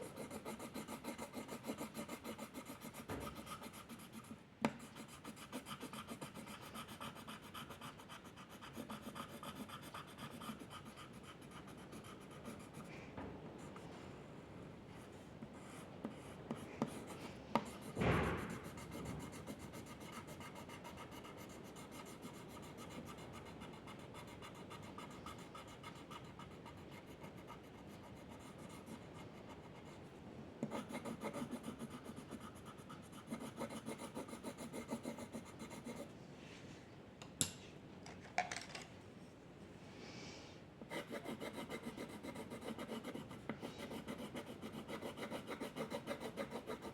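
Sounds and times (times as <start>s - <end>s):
pencil scratching on paper: 0.0s - 12.9s, 15.0s - 30.0s, 30.6s - 36.1s, 40.9s - 46.9s.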